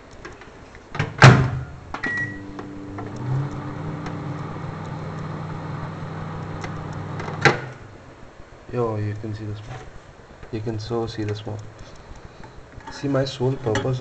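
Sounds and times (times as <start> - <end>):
microwave door shutting: 1.0 - 5.2
microwave running hum: 1.6 - 8.0
keypad beep: 2.0 - 3.3.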